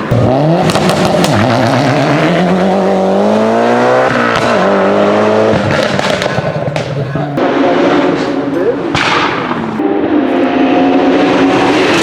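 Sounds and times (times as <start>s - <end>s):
car engine accelerating hard: 0.0s - 12.0s
exhaust pops: 0.1s - 1.9s, 5.5s - 7.4s.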